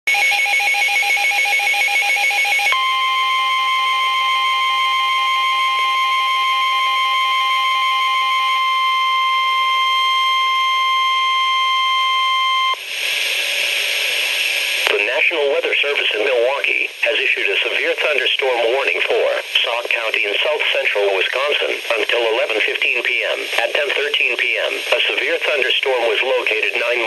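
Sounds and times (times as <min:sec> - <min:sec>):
steady warning alarm tone: 0:00.1 - 0:12.8
radio hiss: 0:12.8 - 0:27.0.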